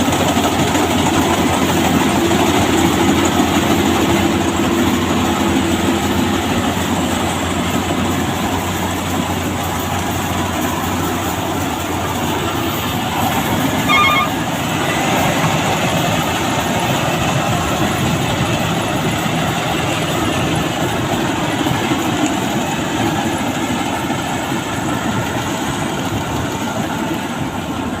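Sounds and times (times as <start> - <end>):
combine harvester running: 0.0 - 28.0
short beeping: 13.8 - 14.4.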